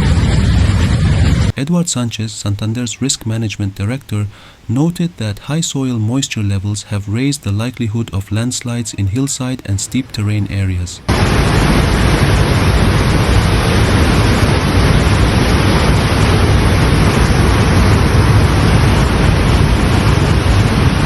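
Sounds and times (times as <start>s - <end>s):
floodwater rushing: 11.1s - 21.0s.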